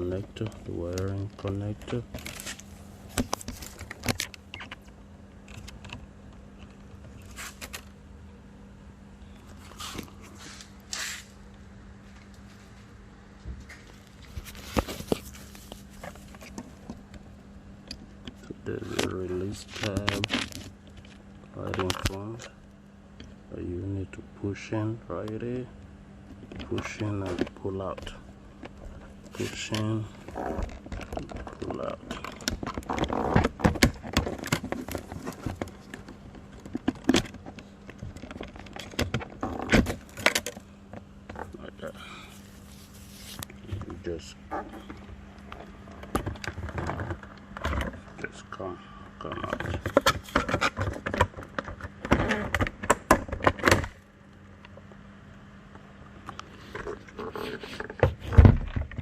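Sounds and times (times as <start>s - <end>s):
scraping rustle: 7.1s - 7.9s, 9.5s - 11.4s, 13.6s - 16.9s, 42.3s - 48.1s.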